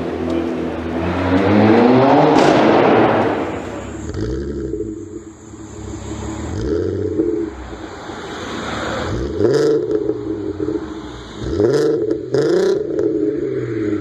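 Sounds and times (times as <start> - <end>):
car engine idling and revving: 0.0 - 14.0.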